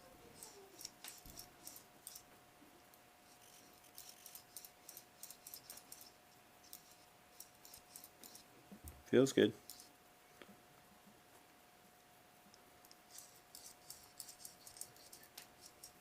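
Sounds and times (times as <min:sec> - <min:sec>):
screwdriver metal ticks and scrapes: 0:00.4 - 0:02.3, 0:03.2 - 0:08.5, 0:09.6 - 0:09.9, 0:12.8 - 0:16.0.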